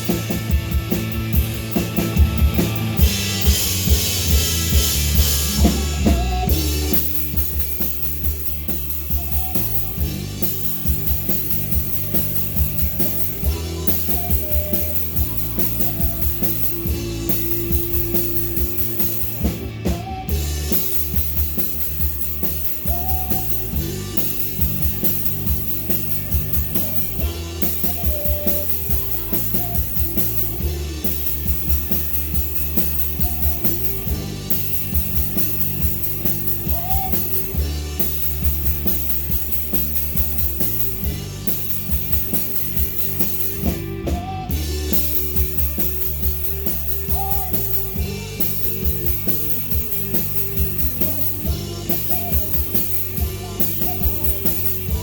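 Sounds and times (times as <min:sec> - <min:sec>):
bass notes: 0:00.0 - 0:55.0
drum kit beat: 0:00.0 - 0:55.0
person singing: 0:02.2 - 0:39.3, 0:43.6 - 0:55.0.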